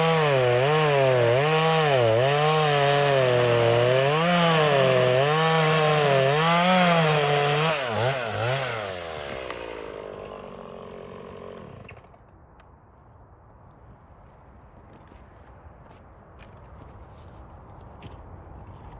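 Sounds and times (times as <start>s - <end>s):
chainsaw engine revving: 0.0s - 12.1s.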